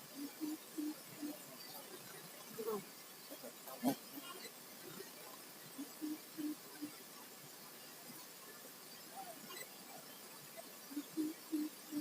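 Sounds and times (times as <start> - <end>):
dove cooing: 0.1 - 1.4, 5.8 - 6.9, 10.9 - 12.0.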